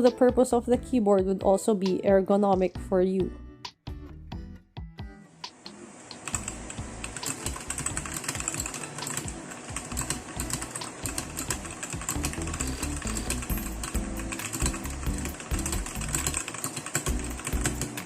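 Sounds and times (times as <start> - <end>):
fast keyboard typing: 6.3 - 18.0.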